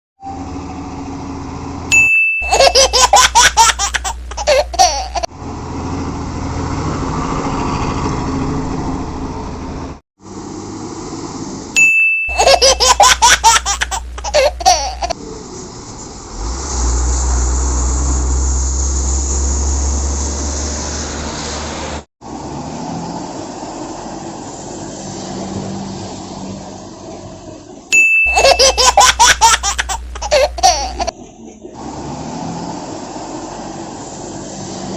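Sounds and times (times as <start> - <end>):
low rumbling vehicle-like noise: 0.2 - 34.9
ding: 1.9 - 2.6, 11.8 - 12.4, 27.9 - 28.6
child-like giggling laughter: 2.4 - 5.3, 12.3 - 15.2, 28.3 - 31.2.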